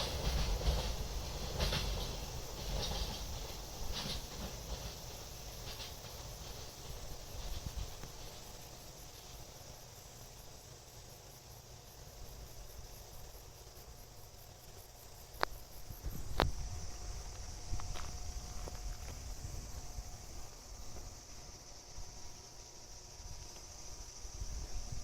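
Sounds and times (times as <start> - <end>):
insects trilling: 0.0 - 25.0
train rumble: 0.0 - 25.0.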